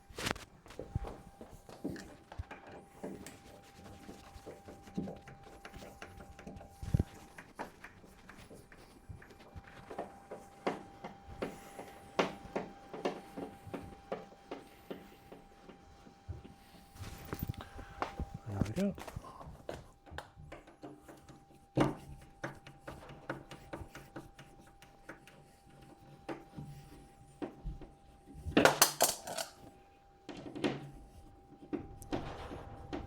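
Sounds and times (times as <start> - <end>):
faint steady hum: 0.0 - 33.0
small clicks and taps: 0.2 - 16.6.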